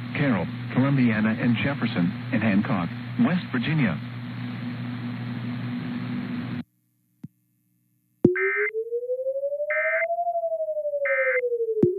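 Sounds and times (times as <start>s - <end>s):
humming hissing broadcast background: 0.0s - 8.2s
warbling digital data tones: 8.3s - 10.4s, 11.0s - 11.9s
synthesized tone rising in pitch: 8.3s - 11.9s.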